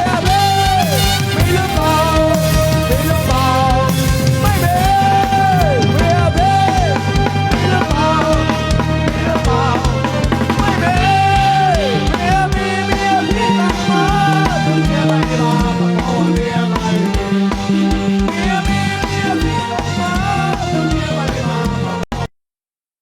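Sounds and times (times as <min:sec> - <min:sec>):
bass drum thuds: 0:00.0 - 0:13.5
brass band playing upbeat music: 0:00.0 - 0:22.3.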